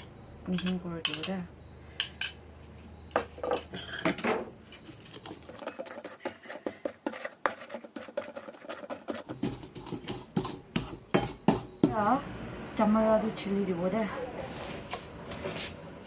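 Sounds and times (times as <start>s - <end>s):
chillies and garlic being crushed: 5.0s - 11.8s.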